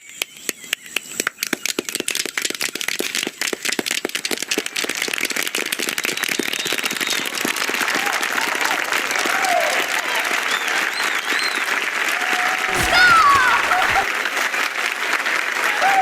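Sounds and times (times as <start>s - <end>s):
crowd applause: 12.7s - 14.1s.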